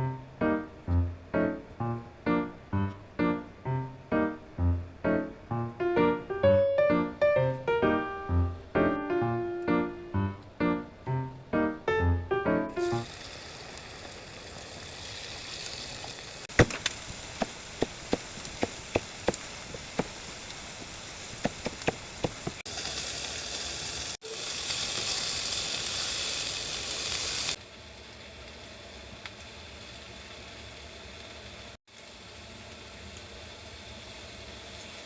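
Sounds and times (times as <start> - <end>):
food sizzling in a frying pan: 12.8 - 16.5, 22.6 - 27.6
sharp knocks: 16.5 - 19.4, 21.4 - 22.6.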